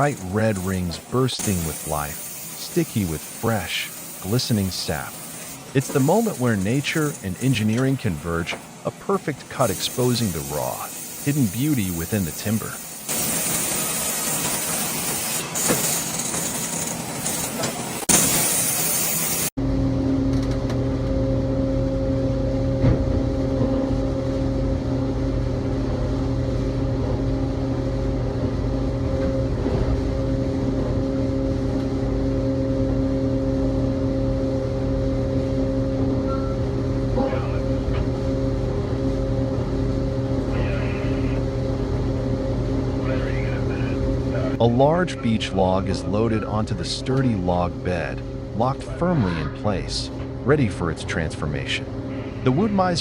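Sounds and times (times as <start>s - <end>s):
machine engine droning: 0.0s - 14.8s, 19.6s - 53.0s.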